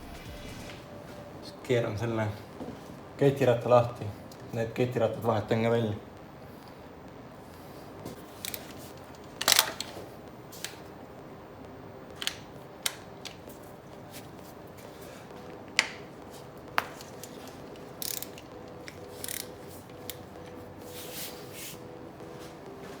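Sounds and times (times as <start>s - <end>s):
ratchet wrench clicking: 8.4s - 8.8s, 9.4s - 9.8s, 17.0s - 20.3s.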